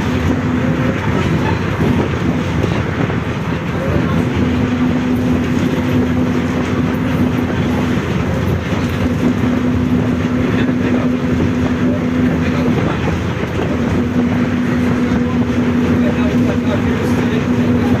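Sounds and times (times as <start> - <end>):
engine and road rumble: 0.0 - 18.0.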